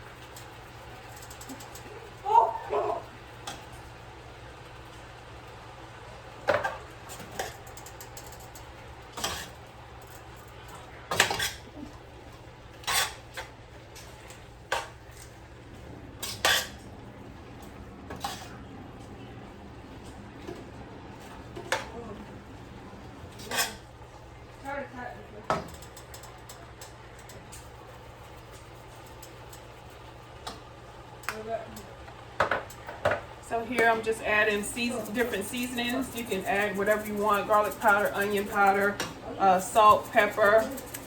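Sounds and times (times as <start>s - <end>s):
steady low hum: 0.0s - 41.0s
dishes and utensils clattering: 16.2s - 16.9s, 20.1s - 23.9s, 34.5s - 41.0s.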